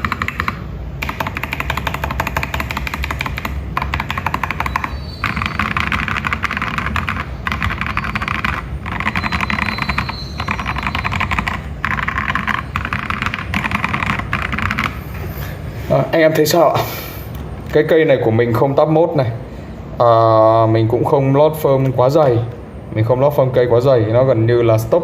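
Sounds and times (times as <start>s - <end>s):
fast typing on mechanical keyboard: 0.0s - 15.3s.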